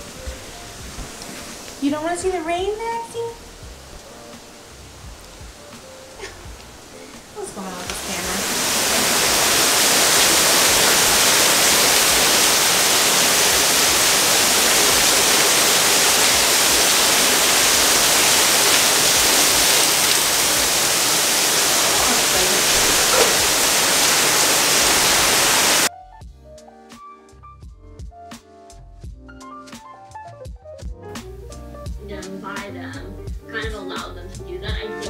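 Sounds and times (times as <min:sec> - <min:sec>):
heavy rain pouring: 0:00.0 - 0:25.9
music with drum beat: 0:03.6 - 0:07.4, 0:27.6 - 0:35.0.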